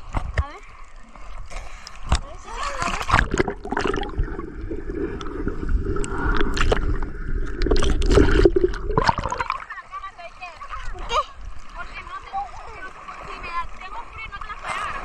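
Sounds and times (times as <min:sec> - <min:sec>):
seawater sloshing and splashing: 0:00.0 - 0:15.0.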